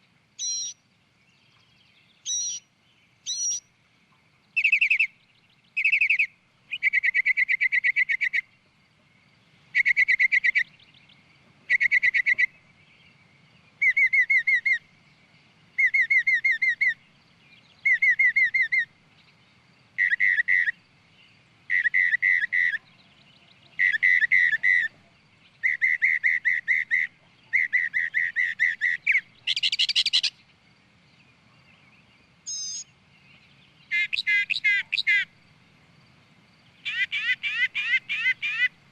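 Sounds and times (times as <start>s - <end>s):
bird calling in rapid trills: 0.0s - 0.8s, 2.2s - 3.7s, 4.6s - 8.5s, 9.7s - 10.9s, 11.7s - 12.7s, 13.7s - 14.9s, 15.8s - 17.1s, 17.8s - 19.0s, 20.0s - 20.8s, 21.7s - 30.4s, 32.4s - 33.0s, 33.8s - 35.4s, 36.7s - 38.9s
short bird chirp: 0.4s - 0.8s, 3.3s - 3.6s, 32.5s - 32.9s.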